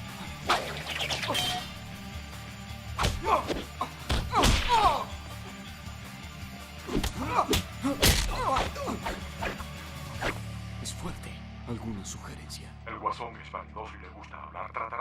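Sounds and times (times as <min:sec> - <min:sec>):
cartoon punch and kick hits: 0:04.1 - 0:04.8, 0:06.9 - 0:08.7
grunts: 0:06.9 - 0:09.6.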